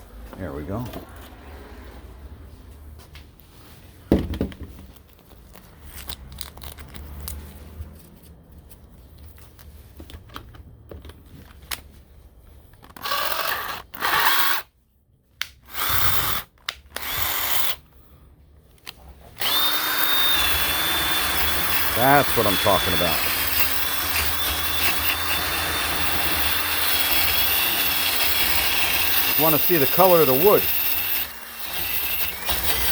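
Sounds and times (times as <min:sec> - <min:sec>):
knock: 0:04.1 - 0:04.8
cordless drill running: 0:13.0 - 0:14.6, 0:15.7 - 0:17.8, 0:19.4 - 0:32.9.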